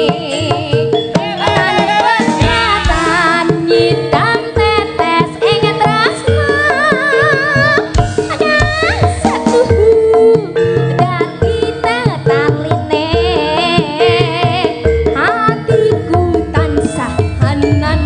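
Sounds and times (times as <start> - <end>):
person singing with vibrato: 0.0 - 18.0
hand drum strokes: 1.2 - 4.3.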